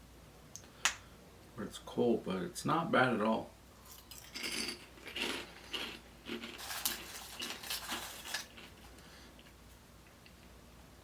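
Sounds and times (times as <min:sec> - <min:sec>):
pork rinds crackling in a bowl: 0:03.8 - 0:09.0.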